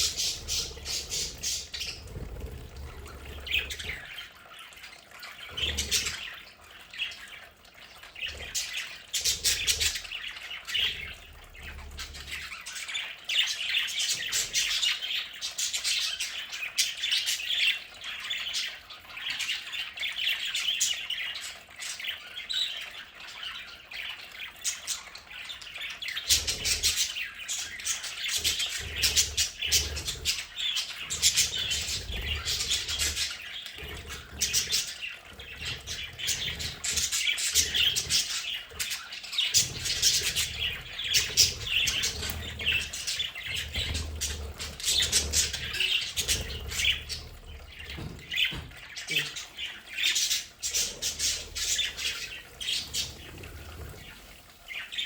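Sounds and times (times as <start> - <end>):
budgerigars chattering and chirping: 0.0 - 4.3, 5.2 - 6.4, 8.1 - 55.0
knocks and clicks: 47.8 - 48.9.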